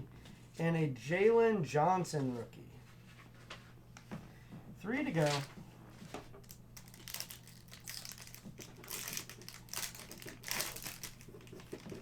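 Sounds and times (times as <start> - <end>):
plastic wrapper crinkling: 5.1 - 5.5, 6.3 - 12.0.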